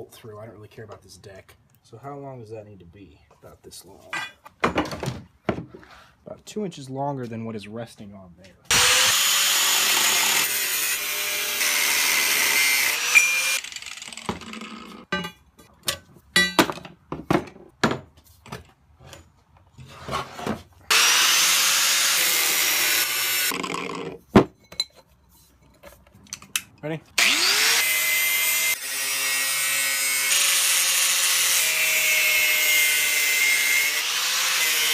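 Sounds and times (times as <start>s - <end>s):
handling knocks and clatter: 4.1s - 5.8s
power tool cutting: 8.7s - 15.1s, 20.9s - 24.1s, 27.2s - 34.9s.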